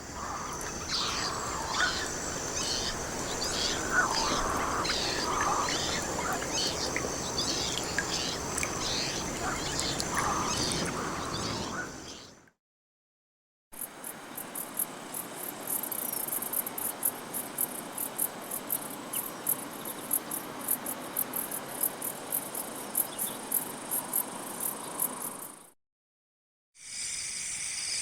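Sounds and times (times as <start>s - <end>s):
steady background hiss: 0.0s - 12.3s
crickets chirping: 0.0s - 12.4s, 13.8s - 25.7s.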